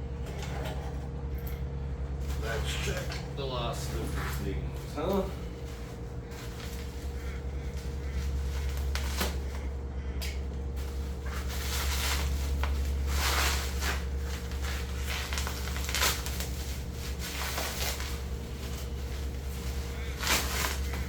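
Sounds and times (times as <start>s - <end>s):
low electrical hum: 0.0s - 21.0s
packaging rustling: 10.8s - 21.0s.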